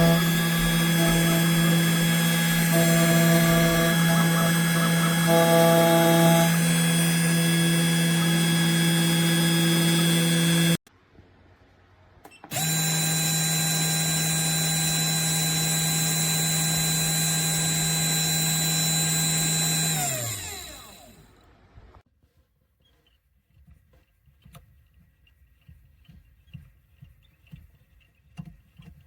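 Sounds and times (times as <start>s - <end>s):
spindle motor high whine: 0.0s - 10.8s, 12.5s - 21.3s.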